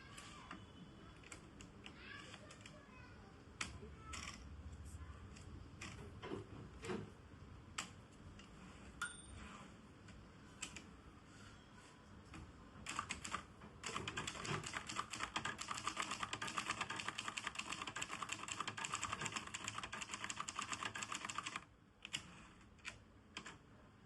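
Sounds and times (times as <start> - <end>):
typewriter clicks and knocks: 12.9 - 22.2.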